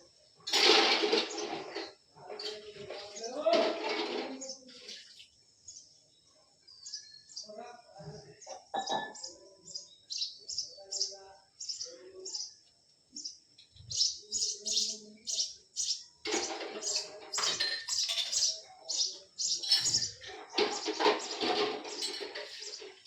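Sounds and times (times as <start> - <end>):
bird chirping rapidly: 13.2 - 16.2, 17.9 - 20.2.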